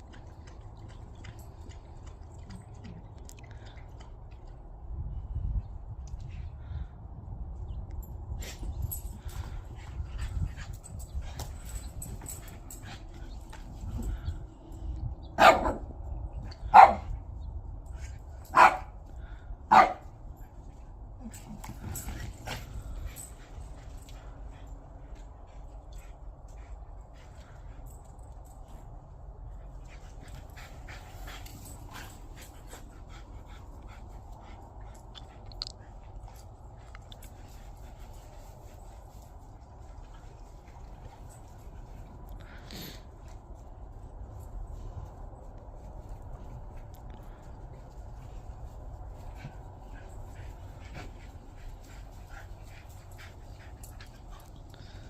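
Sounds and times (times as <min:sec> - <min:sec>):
dog barking: 0:15.4 - 0:15.9, 0:16.7 - 0:17.1, 0:18.5 - 0:18.9, 0:19.7 - 0:20.0
dog panting: 0:29.5 - 0:39.3, 0:47.2 - 0:55.0.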